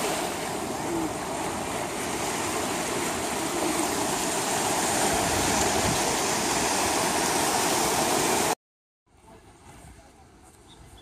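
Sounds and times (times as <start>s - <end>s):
ocean surf washing on beach: 0.0s - 8.6s.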